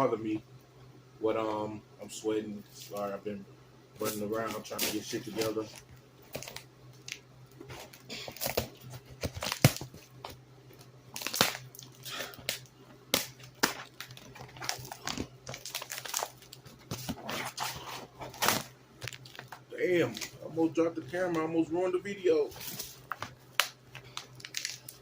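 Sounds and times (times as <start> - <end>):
faint low hum: 0.0 - 25.0
cardboard box tearing and crinkling: 7.7 - 10.0, 11.2 - 11.8, 13.2 - 19.4.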